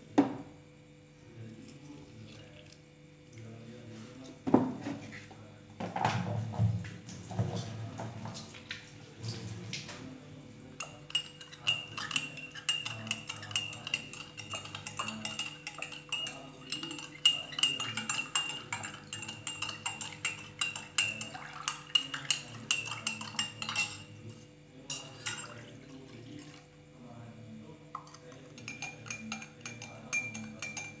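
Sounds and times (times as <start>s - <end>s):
metal spoon clinking in glass: 10.8s - 25.7s, 28.0s - 31.0s.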